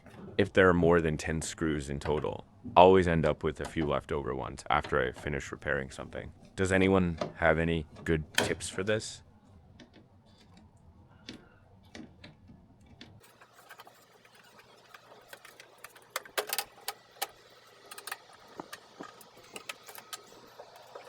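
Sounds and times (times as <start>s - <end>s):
plastic parts being handled: 4.7s - 21.0s.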